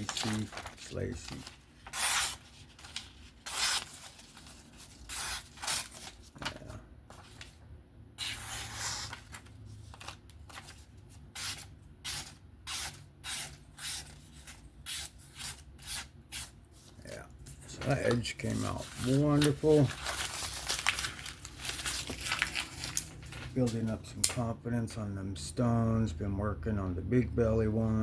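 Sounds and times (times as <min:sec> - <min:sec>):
knife slicing through paper: 0:00.0 - 0:06.1.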